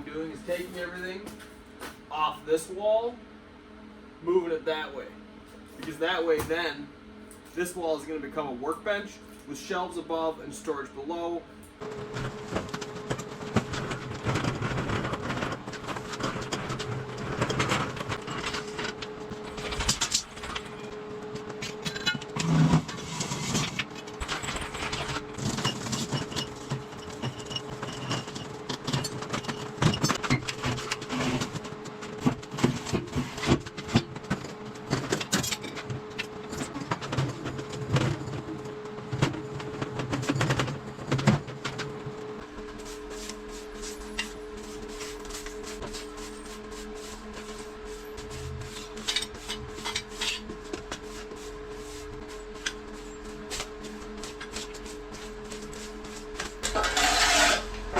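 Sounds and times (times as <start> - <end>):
steady hum: 0.0 - 57.9
objects clattering and knocking: 12.0 - 42.0, 56.3 - 57.9.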